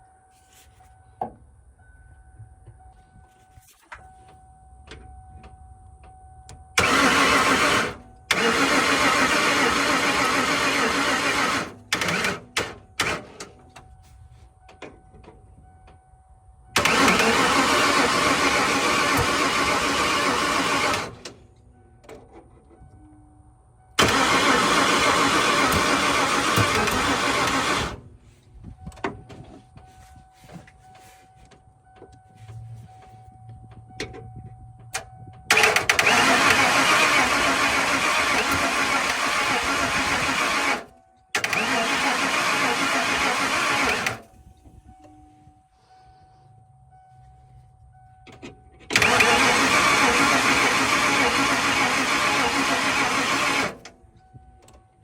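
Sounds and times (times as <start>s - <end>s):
truck engine cranking by starter: 6.7s - 15.3s, 16.7s - 23.0s, 23.9s - 45.0s, 47.9s - 55.0s.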